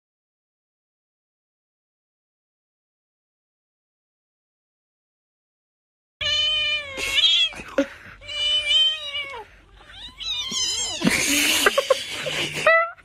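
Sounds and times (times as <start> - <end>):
cat yowling: 6.2 - 7.6, 8.2 - 11.1.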